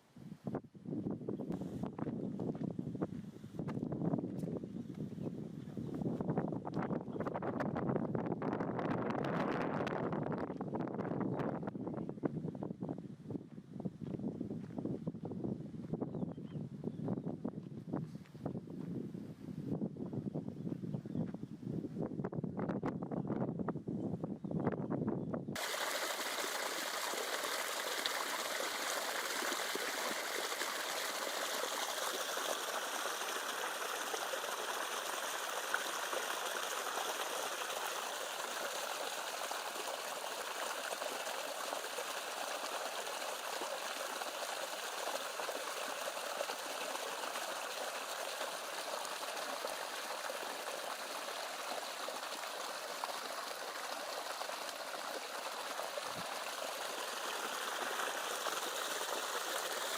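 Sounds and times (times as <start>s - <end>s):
stream water trickling: 25.6s - 59.9s.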